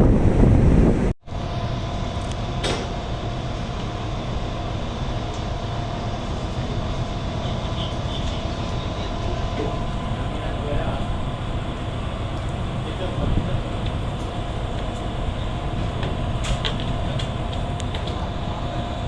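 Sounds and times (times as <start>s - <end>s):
wind buffeting microphone: 0.0s - 7.4s, 8.4s - 19.0s
machinery drone: 1.3s - 19.0s.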